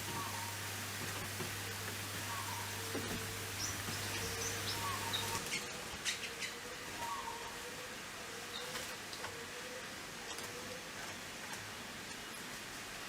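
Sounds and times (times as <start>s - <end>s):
birds chirping: 1.5s - 7.6s.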